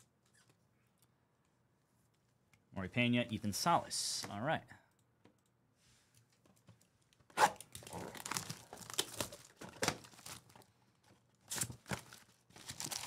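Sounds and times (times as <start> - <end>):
wrapper tearing and crinkling: 7.6 - 10.6, 11.4 - 13.0.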